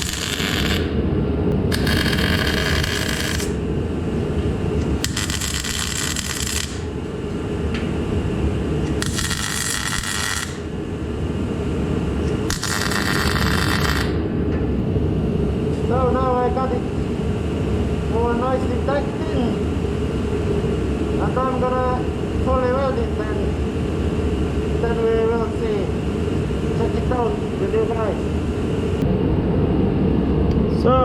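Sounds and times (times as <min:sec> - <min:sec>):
welder crackling: 0:00.0 - 0:01.0, 0:01.6 - 0:03.7, 0:04.8 - 0:07.0, 0:08.8 - 0:10.8, 0:12.3 - 0:14.2.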